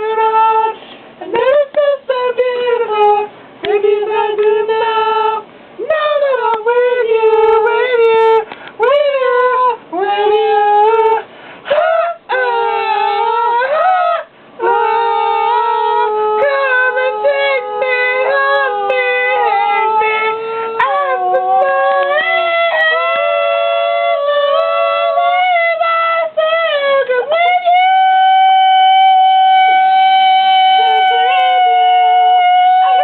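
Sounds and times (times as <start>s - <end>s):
wordless high-pitched singing: 10.0s - 26.4s, 27.2s - 33.0s.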